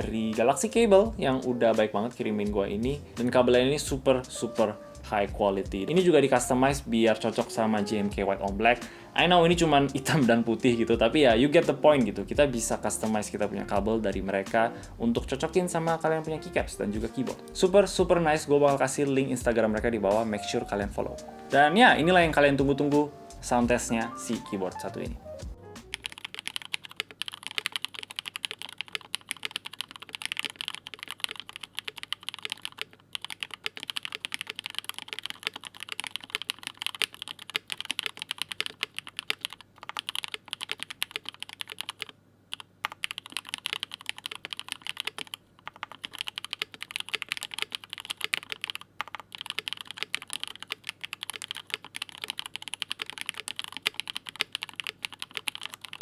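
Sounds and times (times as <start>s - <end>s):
mechanical keyboard typing: 25.9s - 56.0s.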